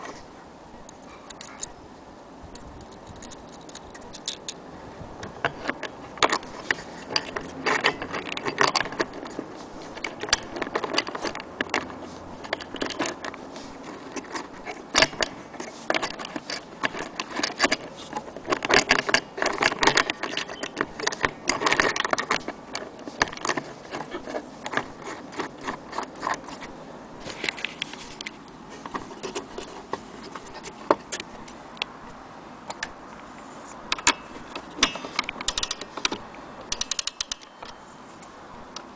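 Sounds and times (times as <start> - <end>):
wall clock parts clicking and rattling: 5.2 - 31.9, 33.9 - 37.8.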